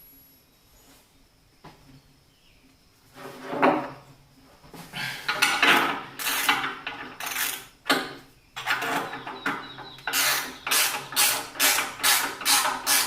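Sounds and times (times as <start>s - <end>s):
wood and tools scraping and clattering: 3.1s - 13.0s.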